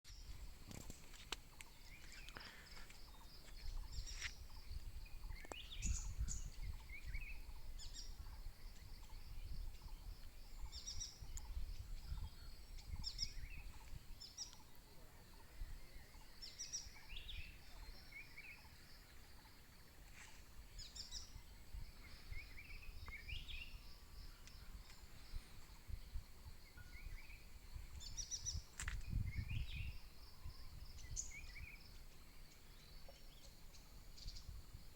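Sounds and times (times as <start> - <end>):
birds chirping: 0.1 - 34.7
wind rumble on microphone: 3.1 - 16.2, 20.5 - 34.9.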